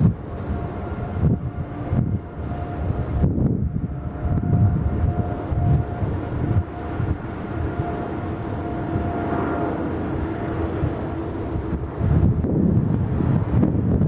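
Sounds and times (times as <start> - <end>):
jet airliner engines passing: 0.0 - 14.0
wind on microphone: 0.0 - 14.0.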